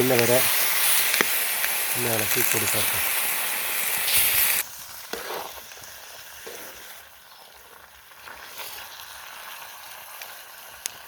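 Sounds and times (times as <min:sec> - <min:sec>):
meat sizzling in an iron pan: 0:00.0 - 0:11.0
spoon scraping a pan: 0:04.1 - 0:05.6.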